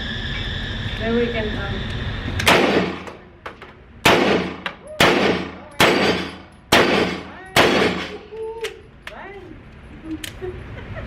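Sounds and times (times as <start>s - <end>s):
gunshots with echo: 2.5s - 3.1s, 4.1s - 8.2s.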